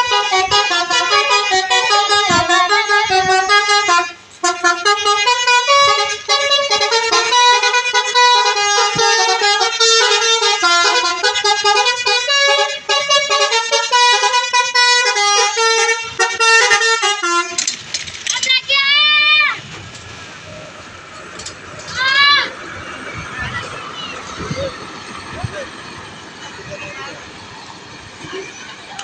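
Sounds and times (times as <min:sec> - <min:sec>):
bus musical air horn tune: 0:00.0 - 0:17.8.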